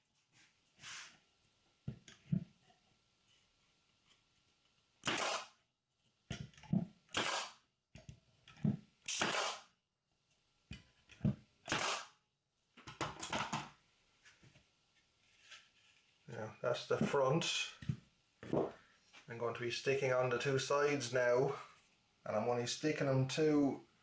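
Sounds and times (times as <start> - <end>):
pin nailer shots with hiss: 5.0 - 5.5, 7.1 - 7.6, 9.1 - 9.7, 11.7 - 12.2.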